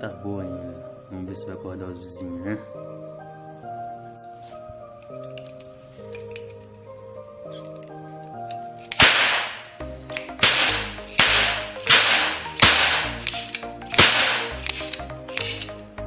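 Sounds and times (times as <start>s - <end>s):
background music: 0.0s - 16.0s
cap gun cracks: 5.0s - 6.6s, 7.6s - 15.8s.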